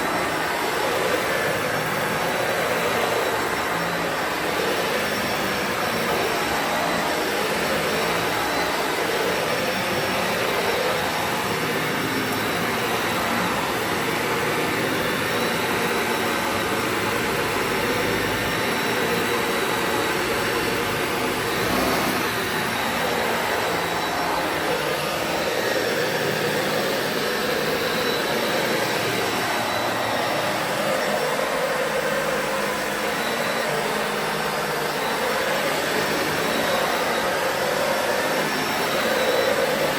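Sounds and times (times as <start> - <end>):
vacuum cleaner running on carpet: 0.0 - 39.9.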